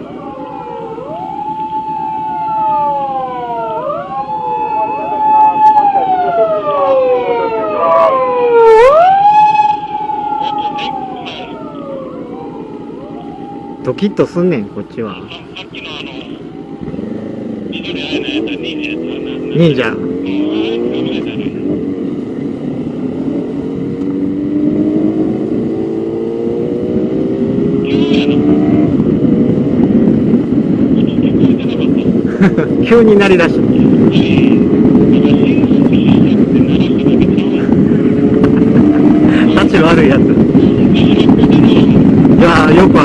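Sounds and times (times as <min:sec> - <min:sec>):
wailing siren: 0:00.0 - 0:21.8
wind and road rush: 0:00.0 - 0:43.0
motorcycle engine accelerating: 0:16.4 - 0:32.8, 0:33.6 - 0:43.0.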